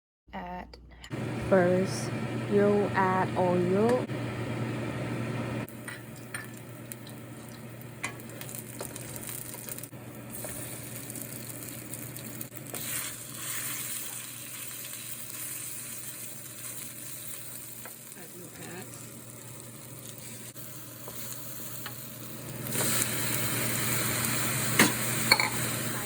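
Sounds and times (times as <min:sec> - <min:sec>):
food sizzling in hot oil: 0:05.7 - 0:26.0.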